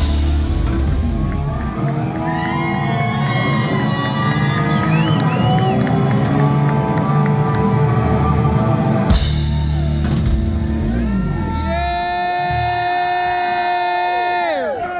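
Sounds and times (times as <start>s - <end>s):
cymbal and drum crash: 0.0s - 1.5s
rock band playing: 0.0s - 2.3s, 2.9s - 13.4s.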